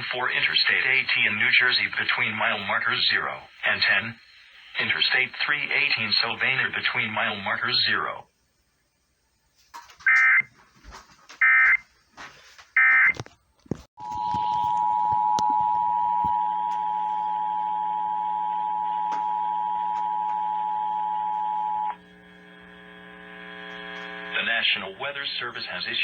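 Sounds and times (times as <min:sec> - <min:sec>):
dual-tone alarm: 0:10.1 - 0:10.5, 0:11.4 - 0:11.8, 0:12.8 - 0:13.2, 0:14.0 - 0:22.0
low steady hum: 0:14.0 - 0:26.0.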